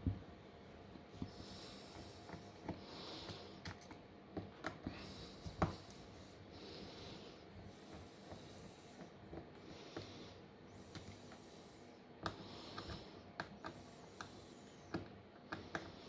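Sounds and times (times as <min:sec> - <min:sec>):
small tools clicking and tapping: 0:02.6 - 0:04.8.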